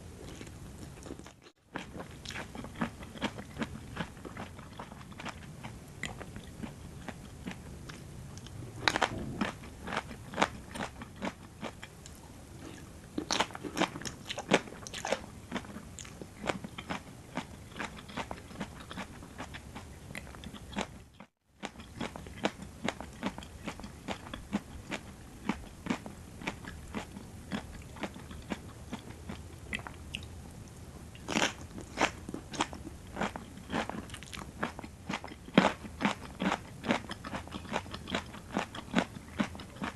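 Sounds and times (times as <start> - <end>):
close chewing crunches: 0.2 - 21.0, 21.6 - 30.3, 31.2 - 39.9.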